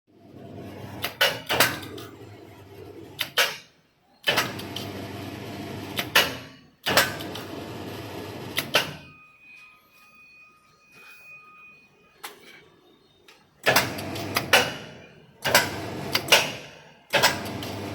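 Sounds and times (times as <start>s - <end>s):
machine running in bursts: 15.4s - 17.9s.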